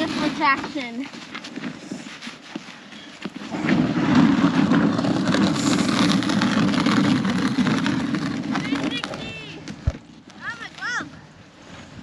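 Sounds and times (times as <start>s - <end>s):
sliding scrape across ice: 0.0s - 9.6s.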